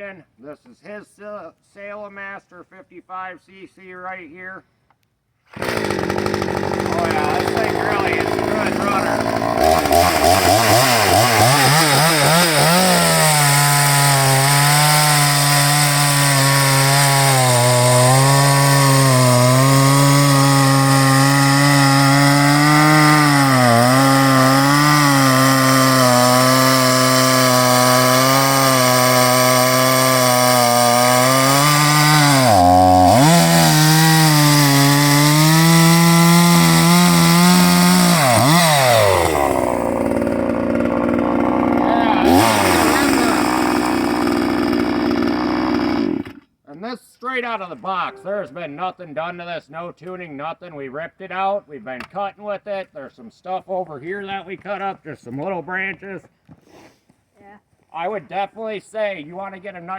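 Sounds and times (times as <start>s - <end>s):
chainsaw running at high revs: 5.5s - 46.4s.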